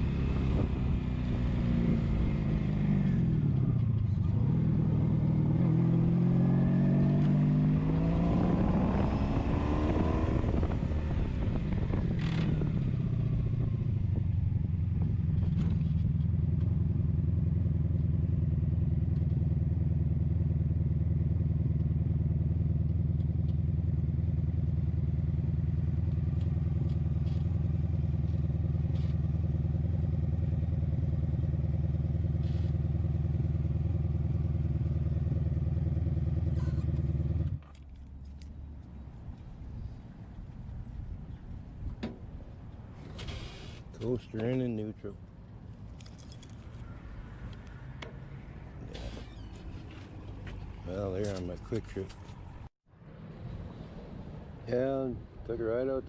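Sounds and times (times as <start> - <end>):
motorcycle engine accelerating: 0.0 - 37.8.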